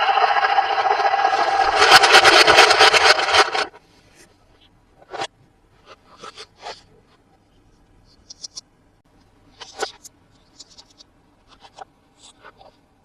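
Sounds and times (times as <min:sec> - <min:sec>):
packaging scraping and rattling: 0:01.2 - 0:03.7.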